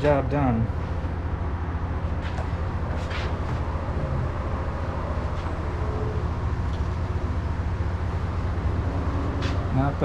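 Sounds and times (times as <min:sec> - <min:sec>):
low background hum: 0:00.0 - 0:10.0.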